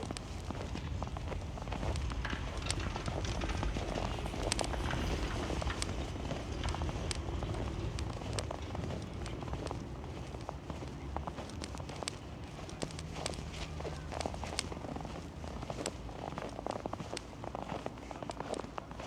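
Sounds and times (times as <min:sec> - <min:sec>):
low wind rumble on microphone: 0:00.0 - 0:19.0
footsteps crunching through snow: 0:06.9 - 0:19.0.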